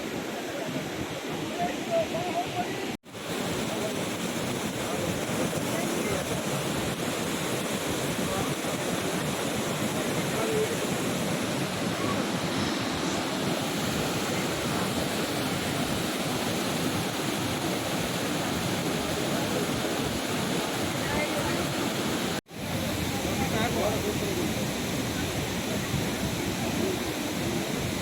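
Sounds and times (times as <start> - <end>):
waterfall rushing: 0.0 - 28.0.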